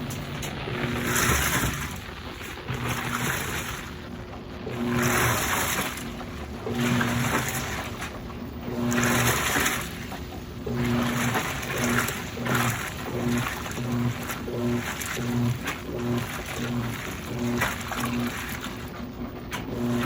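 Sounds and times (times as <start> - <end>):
washing machine motor humming: 0.0 - 20.0
water swishing in drum: 0.0 - 20.0.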